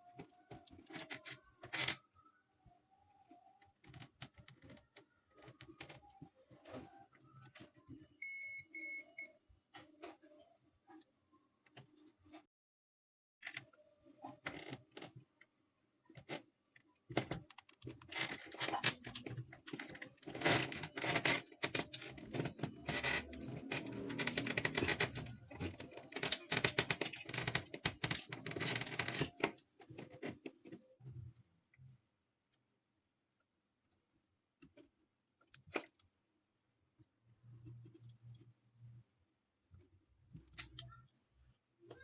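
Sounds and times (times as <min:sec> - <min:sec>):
hands working with tools and parts: 0:00.0 - 0:09.0, 0:13.4 - 0:42.0.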